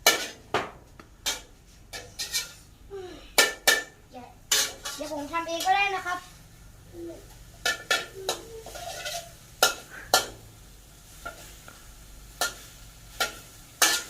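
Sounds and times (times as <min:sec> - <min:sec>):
metal spoon clinking against pan: 0:07.6 - 0:10.3, 0:12.4 - 0:14.0.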